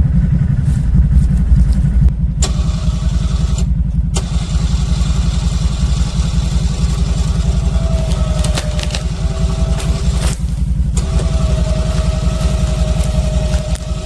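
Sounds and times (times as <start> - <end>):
atv engine running: 0.0 - 14.0
sharp clicks: 7.0 - 14.0.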